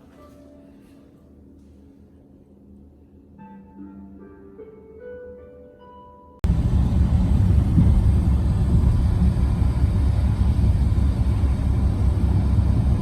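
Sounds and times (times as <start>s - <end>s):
loud low rumble: 6.4s - 13.0s.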